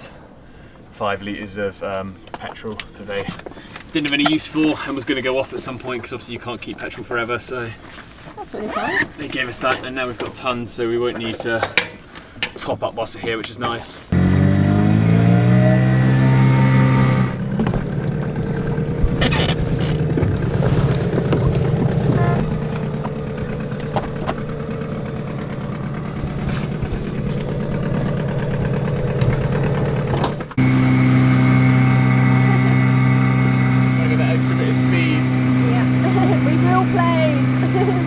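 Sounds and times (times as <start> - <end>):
small outboard motor running: 14.1 - 38.0.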